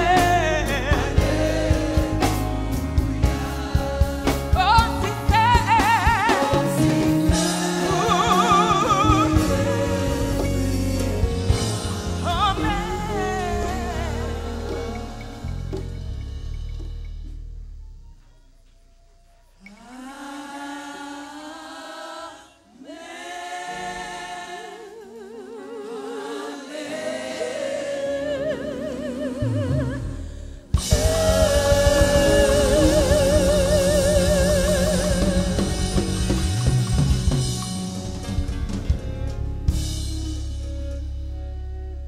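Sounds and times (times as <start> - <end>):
gospel singing: 0.0 - 16.9, 19.5 - 38.3
band with drums and bass: 0.0 - 18.4, 30.7 - 42.0.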